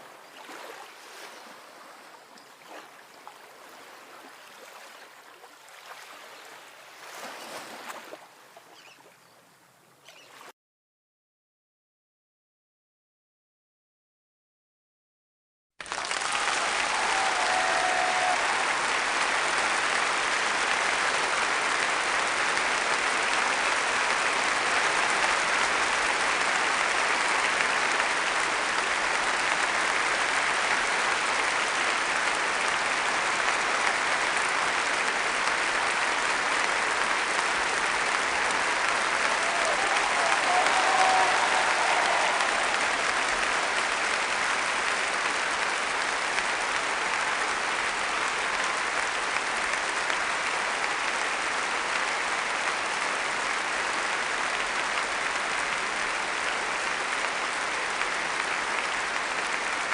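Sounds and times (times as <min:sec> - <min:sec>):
audience applauding: 0:15.8 - 0:59.9.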